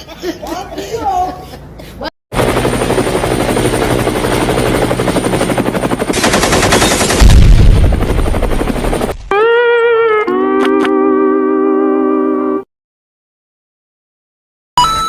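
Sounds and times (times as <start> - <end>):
rapid automatic gunfire: 2.4 - 9.1.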